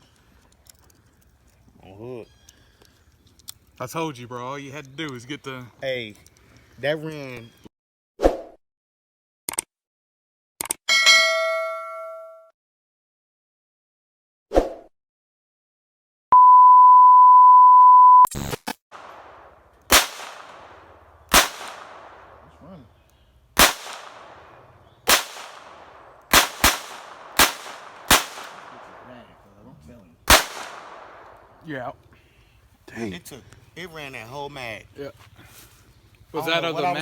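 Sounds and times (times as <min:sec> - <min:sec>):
steady high beep: 0:16.4 - 0:18.3
pistol shots: 0:19.0 - 0:22.6, 0:23.6 - 0:29.3, 0:30.3 - 0:31.6.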